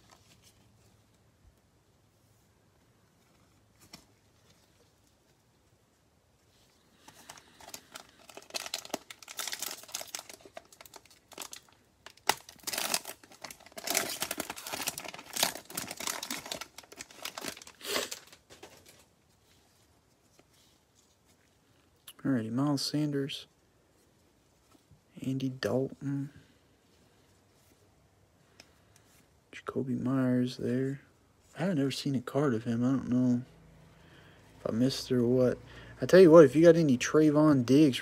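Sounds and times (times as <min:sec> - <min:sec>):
cellophane wrapper crinkling and tearing: 0:06.9 - 0:19.1.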